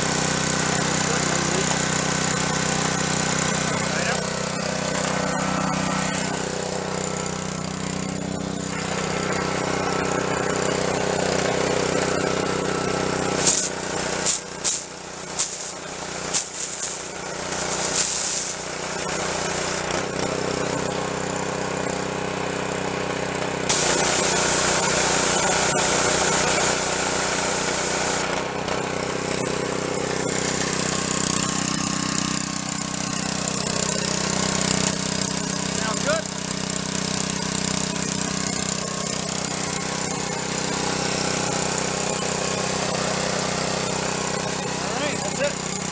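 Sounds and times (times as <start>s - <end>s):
pressure washer engine running: 0.0s - 45.9s
water spray hissing: 3.0s - 19.9s, 23.7s - 28.2s.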